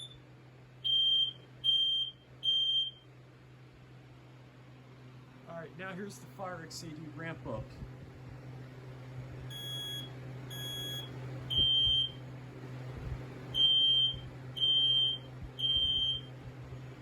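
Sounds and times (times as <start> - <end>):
smoke alarm beeping: 0.0 - 0.2, 0.8 - 3.1, 9.5 - 12.2, 13.5 - 16.3.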